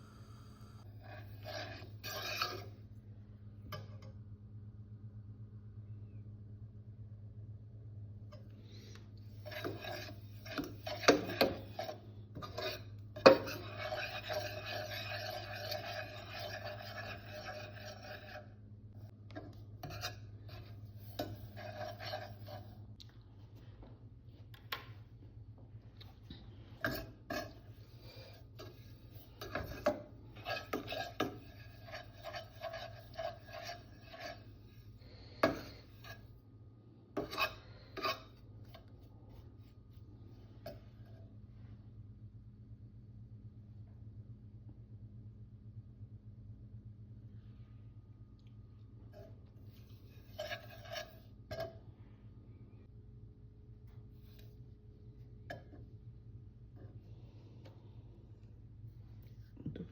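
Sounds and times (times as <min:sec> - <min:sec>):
low steady hum: 0:00.0 - 0:59.9
rasping food scraping: 0:01.0 - 0:02.8, 0:08.8 - 0:18.6, 0:19.8 - 0:22.8, 0:26.8 - 0:36.4, 0:37.2 - 0:38.8, 0:49.7 - 0:51.7.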